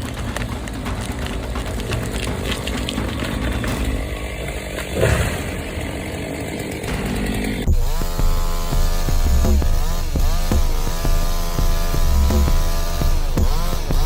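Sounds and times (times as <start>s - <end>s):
chainsaw cutting wood: 0.0s - 14.0s
chainsaw revving up: 3.2s - 14.0s.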